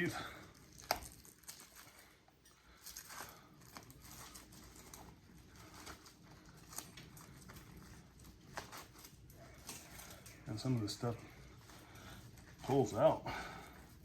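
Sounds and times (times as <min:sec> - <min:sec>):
plastic sheathing being peeled off wire: 0:00.0 - 0:14.0.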